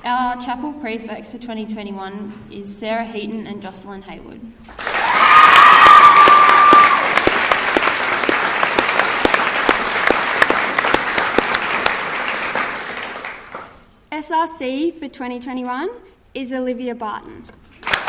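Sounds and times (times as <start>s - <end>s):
audience applauding: 4.7s - 13.8s, 17.8s - 18.0s
short high cheer: 4.8s - 7.6s.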